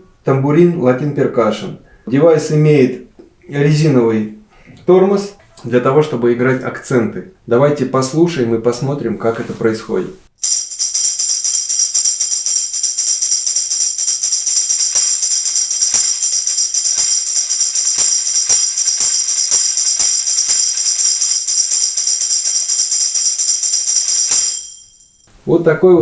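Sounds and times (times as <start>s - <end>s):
pedal tambourine jingling: 10.4s - 25.3s.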